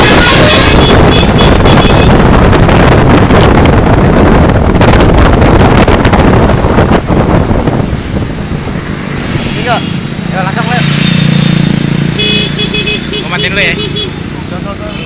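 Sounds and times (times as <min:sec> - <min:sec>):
loud distorted rumble: 0:00.0 - 0:12.2
bus horn notes: 0:12.2 - 0:14.2.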